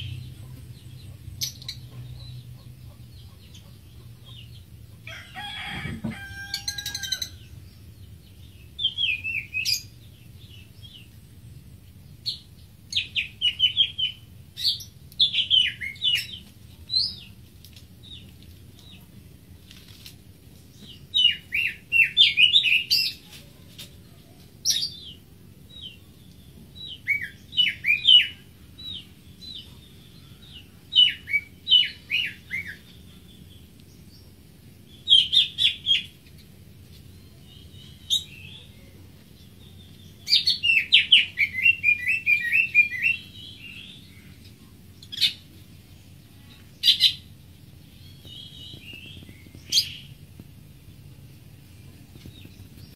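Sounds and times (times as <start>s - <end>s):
bird singing whistled notes: 26.8s - 28.4s, 39.8s - 44.3s, 48.0s - 50.1s.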